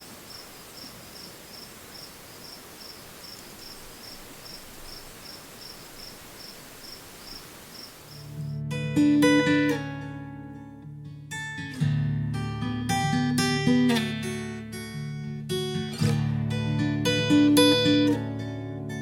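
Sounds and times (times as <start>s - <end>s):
cricket chirping: 0.0s - 8.6s
soft outdoor hiss: 0.0s - 8.6s.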